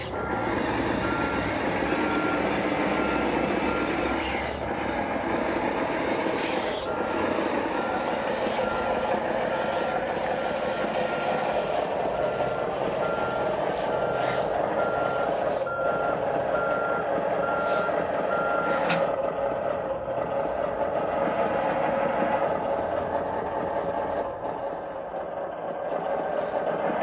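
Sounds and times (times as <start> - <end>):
reversing alarm beeping: 0.0 - 19.1
whir of toy bulldozer drive: 0.0 - 19.8.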